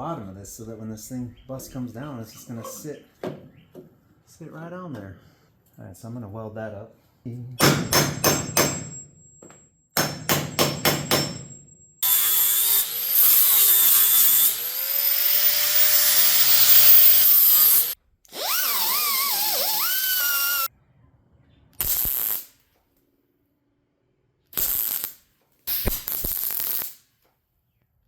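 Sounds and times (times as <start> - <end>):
hammer striking sheet metal: 7.6 - 9.0, 10.0 - 11.6
hand-held power tool running: 12.0 - 20.7.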